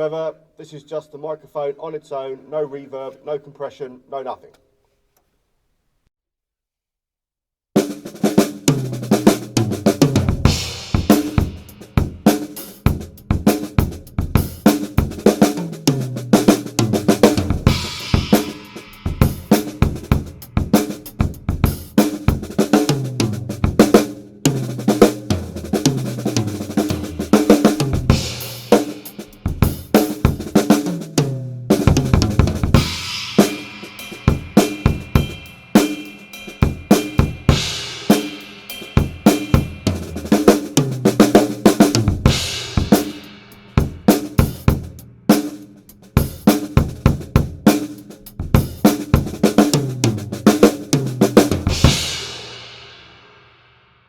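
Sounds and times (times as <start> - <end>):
drum kit groove: 7.8 - 53.5
crash cymbal washes: 17.7 - 20.6, 32.8 - 40.2, 42.4 - 43.8.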